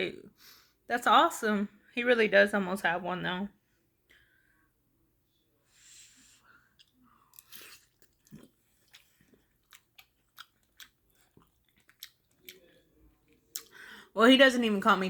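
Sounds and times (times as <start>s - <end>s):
chewing noodle soup: 6.6s - 13.8s.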